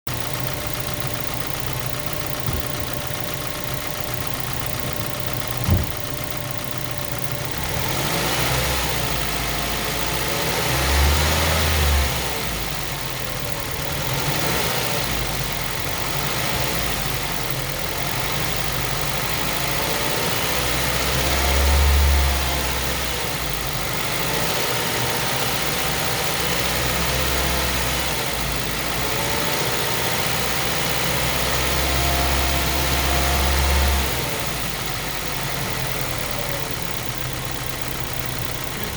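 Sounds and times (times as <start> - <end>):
car engine running with rod knock: 0.2 - 8.2.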